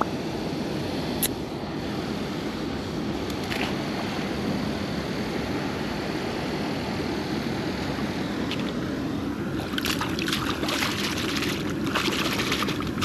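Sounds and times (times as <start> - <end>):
water splashing: 8.5 - 8.8, 9.6 - 13.0.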